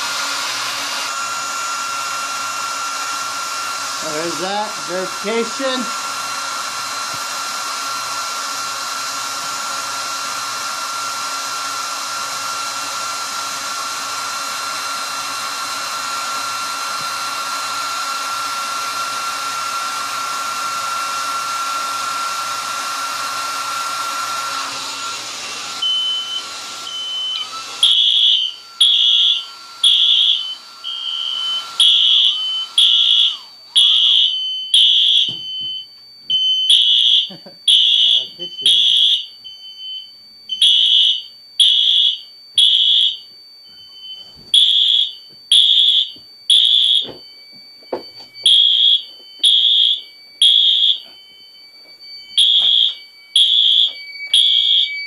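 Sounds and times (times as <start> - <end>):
hair dryer blowing with whine: 0.0 - 35.8, 36.7 - 39.1
fire alarm horn blasts: 25.8 - 43.3, 43.9 - 47.2, 48.4 - 55.0.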